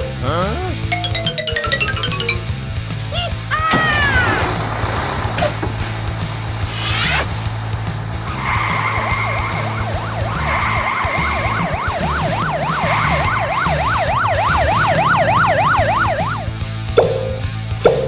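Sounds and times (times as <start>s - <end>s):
background music: 0.0s - 18.0s
police siren wailing: 8.2s - 16.5s.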